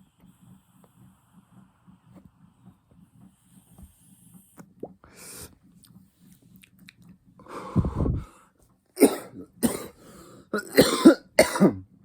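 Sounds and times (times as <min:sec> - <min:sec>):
person breathing: 0:05.0 - 0:05.6, 0:07.4 - 0:08.6, 0:09.9 - 0:10.6.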